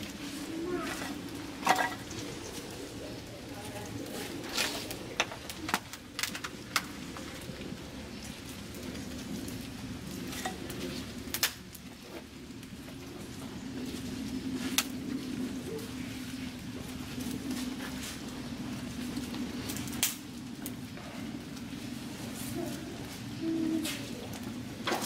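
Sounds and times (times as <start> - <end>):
fire hissing: 0.0 - 25.0
sharp pops of fire: 11.3 - 11.8, 19.7 - 20.8.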